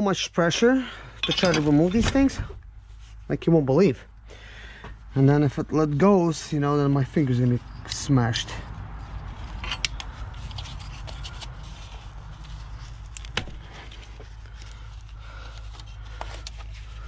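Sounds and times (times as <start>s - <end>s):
tools clicking and tapping: 9.6s - 10.1s.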